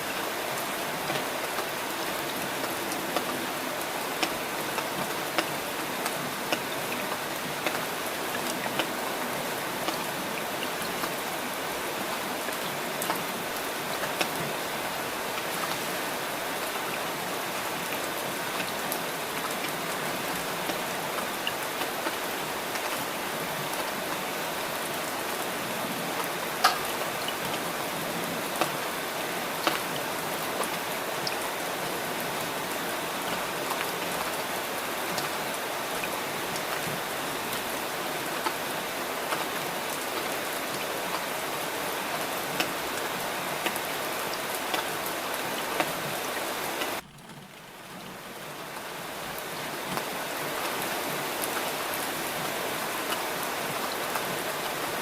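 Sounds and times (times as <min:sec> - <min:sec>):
steady rainfall: 0:00.0 - 0:55.0
single raindrop hits: 0:46.9 - 0:50.2.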